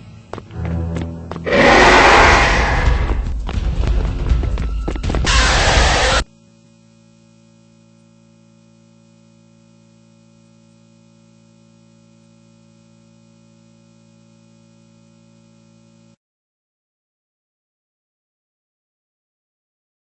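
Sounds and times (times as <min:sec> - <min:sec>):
loud sound cutting off: 0:00.5 - 0:03.6.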